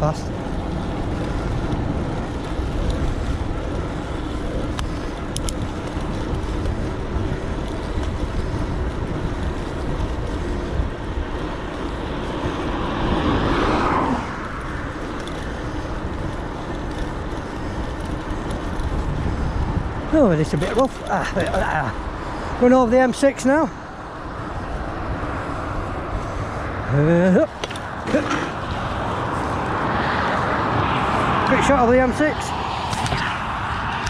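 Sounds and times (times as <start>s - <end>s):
bike tyre noise on road: 0.0s - 34.0s
wind buffeting microphone: 0.0s - 34.0s
vehicle rushing past: 11.5s - 16.6s, 24.2s - 34.0s.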